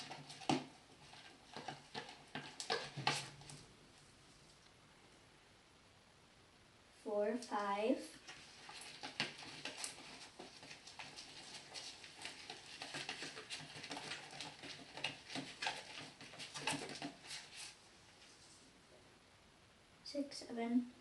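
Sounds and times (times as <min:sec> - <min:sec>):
slime squelching: 0:07.5 - 0:17.8.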